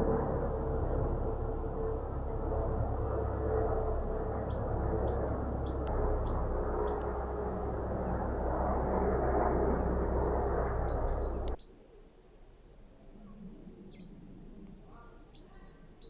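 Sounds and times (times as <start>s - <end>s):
loud steady rushing noise: 0.0s - 11.6s
songbirds chirping: 0.0s - 12.2s, 13.2s - 16.0s.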